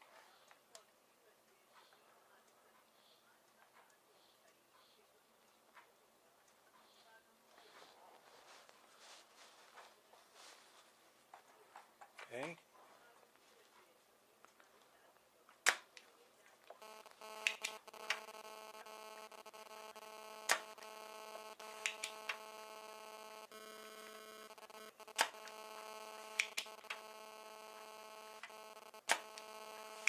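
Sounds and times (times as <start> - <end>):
sharp clicks and taps: 16.7 - 30.0
desoldering tool humming: 16.8 - 30.0.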